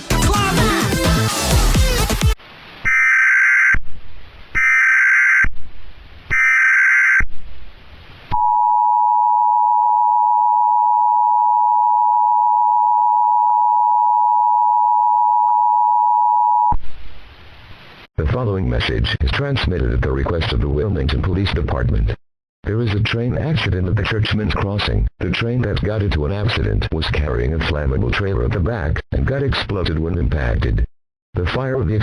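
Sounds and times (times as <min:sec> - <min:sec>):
electronic dance music: 0:00.0 - 0:02.4.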